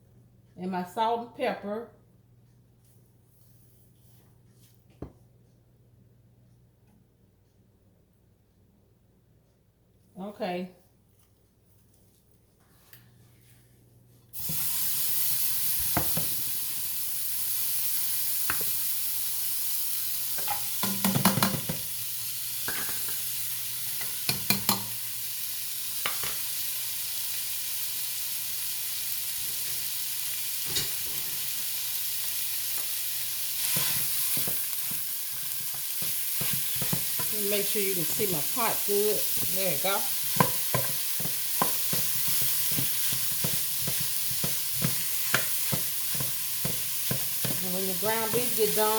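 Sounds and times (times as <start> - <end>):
meat sizzling in a pot: 14.3 - 48.9.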